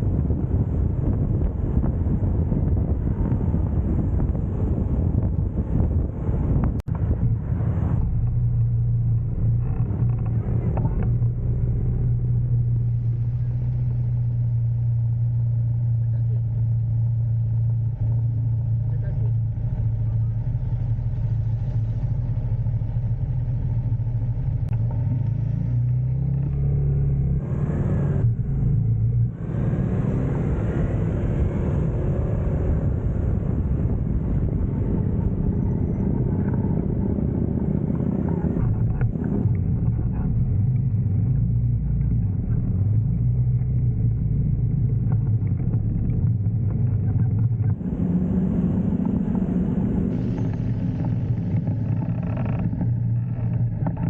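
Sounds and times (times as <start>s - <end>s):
wind and road noise: 0.0s - 54.0s
motorcycle engine running: 31.4s - 54.0s.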